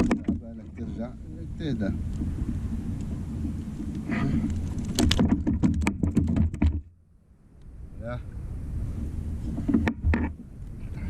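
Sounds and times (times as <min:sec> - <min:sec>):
sharp clicks and knocks: 0:00.0 - 0:00.7, 0:04.4 - 0:06.9, 0:09.5 - 0:10.5
steady low rumble: 0:00.0 - 0:05.4, 0:06.8 - 0:11.0.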